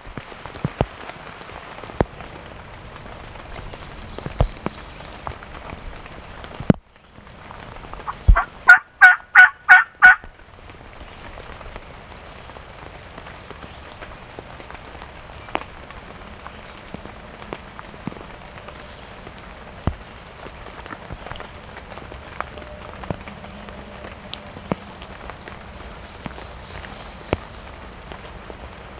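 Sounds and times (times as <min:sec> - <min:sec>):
steady rain: 0:00.0 - 0:28.9
turkey yelps: 0:08.0 - 0:10.2.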